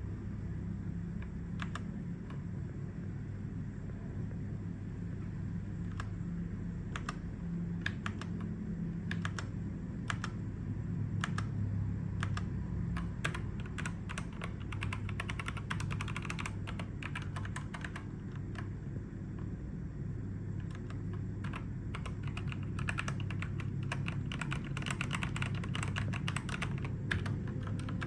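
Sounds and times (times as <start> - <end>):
steady low hum: 0.0 - 28.0
mechanical keyboard typing: 1.4 - 2.4, 5.8 - 6.1, 6.9 - 10.4, 11.1 - 18.8, 20.6 - 28.0.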